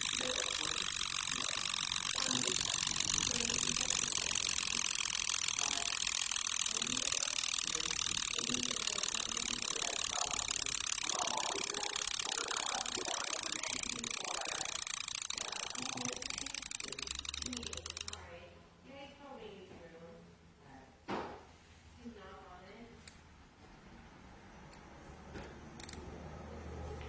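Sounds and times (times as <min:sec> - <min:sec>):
alarm clock mechanism rattling: 0:00.0 - 0:18.2.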